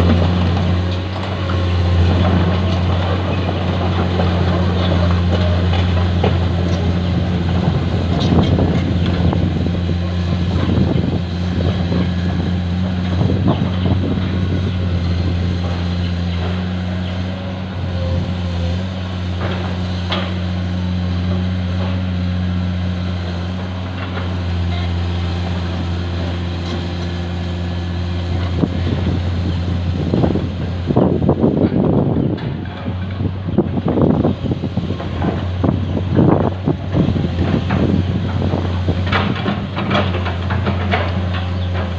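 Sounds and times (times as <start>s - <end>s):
heavy diesel engine droning: 0.0s - 41.9s
knocks and clanks: 36.8s - 41.9s.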